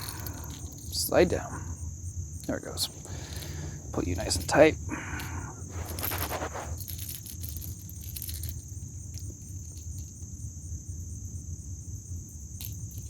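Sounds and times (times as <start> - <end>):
rustling and handling noise: 0.0 - 1.0, 2.4 - 10.1
insects trilling: 0.0 - 13.0.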